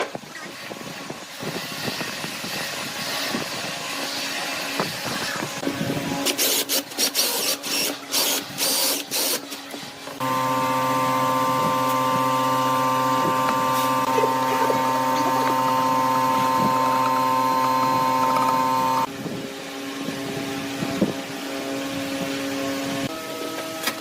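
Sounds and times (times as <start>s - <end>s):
power tool motor humming: 10.2s - 19.1s.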